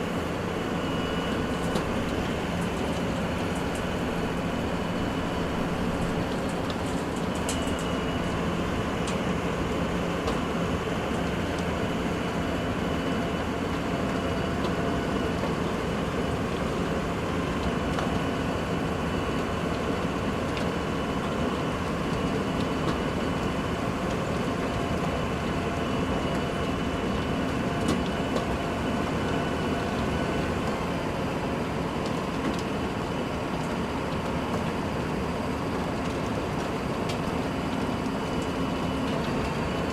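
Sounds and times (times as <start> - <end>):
faint high whine: 0.0 - 10.0
heavy vehicle engine droning: 0.0 - 17.6.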